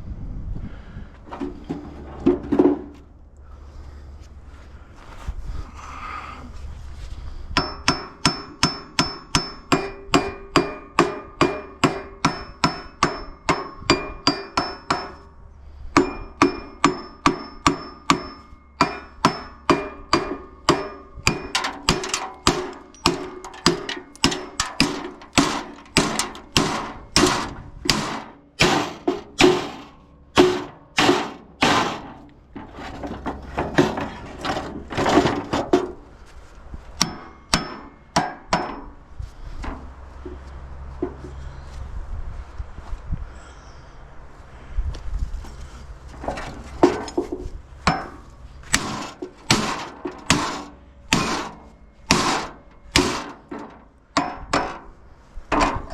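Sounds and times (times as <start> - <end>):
hammer striking metal: 7.6 - 15.3, 15.9 - 36.0, 37.0 - 39.0, 47.8 - 54.9
metal ringing: 7.6 - 15.4, 16.0 - 36.1, 37.0 - 39.0, 46.3 - 55.9.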